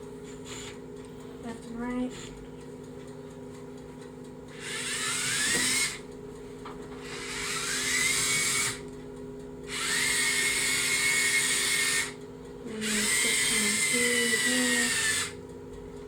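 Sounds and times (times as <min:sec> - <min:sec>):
robot motors whirring: 0:04.6 - 0:06.0, 0:07.0 - 0:08.8, 0:09.7 - 0:15.4.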